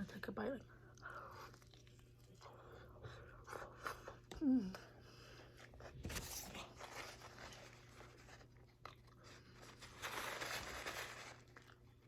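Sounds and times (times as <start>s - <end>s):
chewing and tearing chicken: 0.9s - 4.2s, 7.2s - 12.0s.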